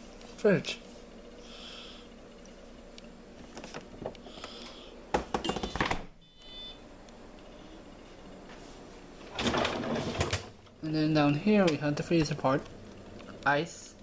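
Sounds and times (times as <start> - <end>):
short electronic beep: 5.5 - 6.8.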